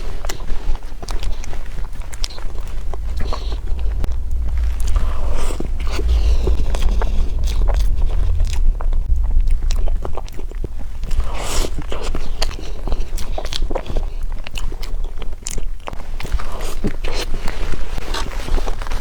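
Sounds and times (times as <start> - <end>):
steady low rumble: 1.2 - 14.4.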